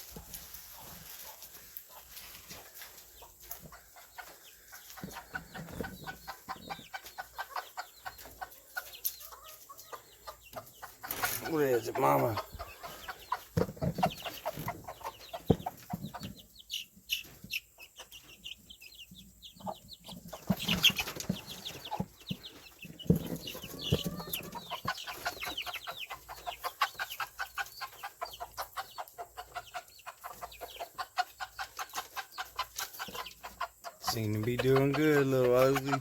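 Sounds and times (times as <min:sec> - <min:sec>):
baby chicks peeping: 0:00.0 - 0:36.0
hen clucking: 0:00.0 - 0:36.0.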